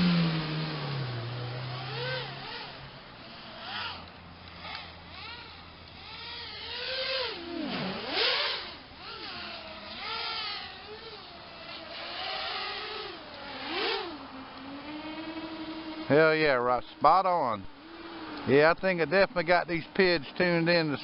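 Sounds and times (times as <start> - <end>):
drone motors whining: 0.0 - 21.0
steady low hum: 0.0 - 21.0.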